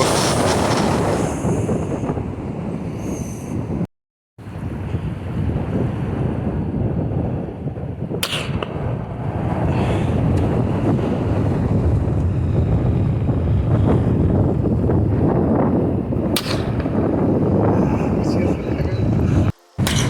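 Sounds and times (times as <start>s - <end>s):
wind buffeting microphone: 0.0s - 20.0s
sharp crack: 8.2s - 8.8s, 16.3s - 17.0s.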